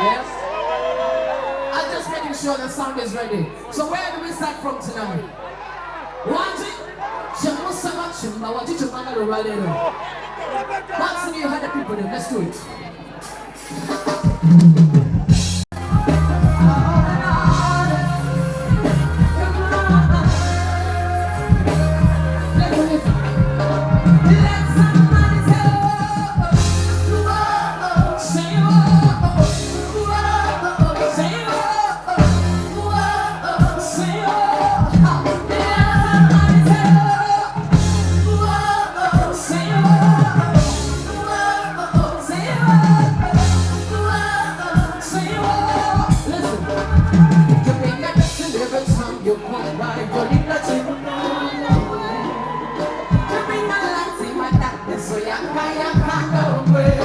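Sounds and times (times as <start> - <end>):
heavy bass line and drum beat: 13.2 - 55.1
person singing: 15.8 - 57.0.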